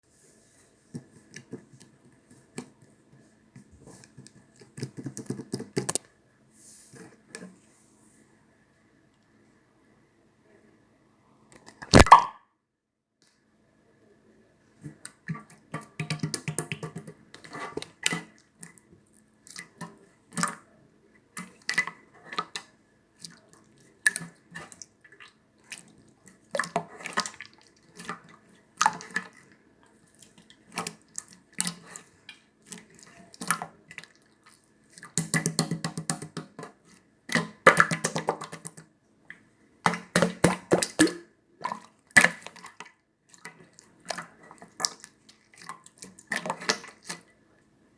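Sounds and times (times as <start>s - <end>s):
slime squelching and popping: 11.9s - 12.4s.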